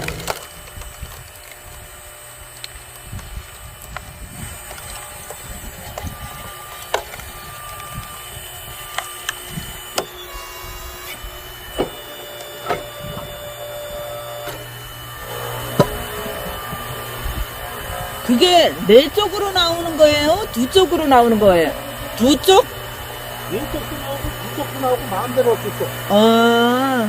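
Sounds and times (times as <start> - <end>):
wood cracking and snapping: 0.0 - 10.3
hydraulic log splitter humming: 0.0 - 27.0.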